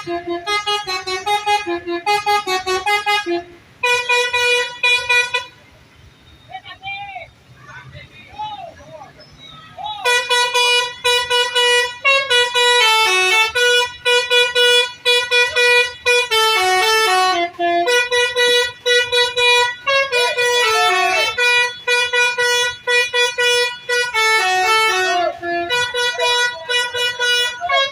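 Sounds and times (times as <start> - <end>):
bus multi-tone horn tune: 0.0 - 6.3, 10.0 - 27.9.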